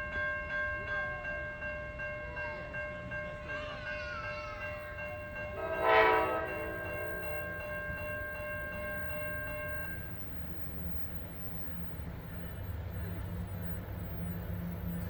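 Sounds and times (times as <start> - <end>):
train whining tones: 4.9 - 15.0
locomotive air horn blast: 5.6 - 7.2.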